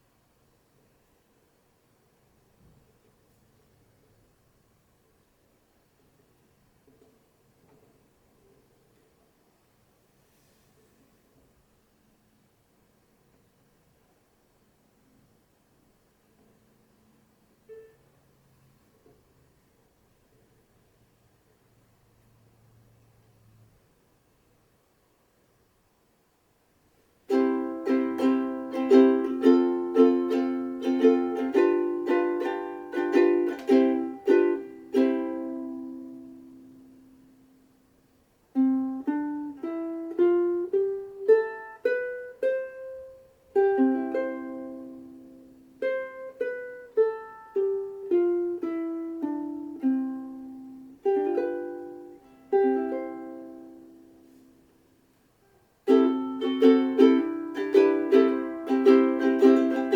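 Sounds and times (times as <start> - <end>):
picked ukulele melody: 17.6 - 18.1, 27.3 - 37.8, 38.5 - 59.9
ukulele chords strummed: 27.3 - 37.7, 38.5 - 54.8, 55.8 - 59.9.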